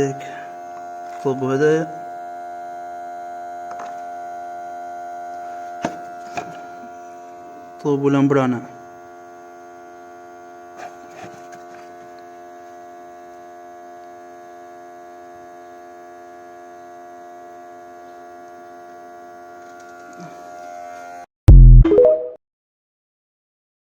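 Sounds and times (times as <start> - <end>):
air pump humming: 5.2 - 13.4.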